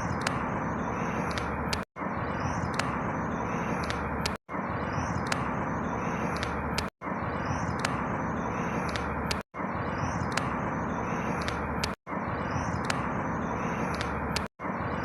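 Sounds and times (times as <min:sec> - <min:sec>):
falling bird chirps: 0:00.0 - 0:15.0
light clicks: 0:01.2 - 0:01.8, 0:07.8 - 0:08.0, 0:08.8 - 0:09.4, 0:11.3 - 0:12.0, 0:13.8 - 0:14.5.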